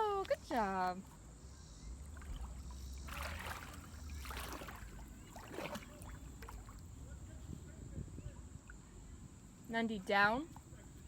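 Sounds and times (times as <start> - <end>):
paddle splashing in water: 2.0 - 6.9.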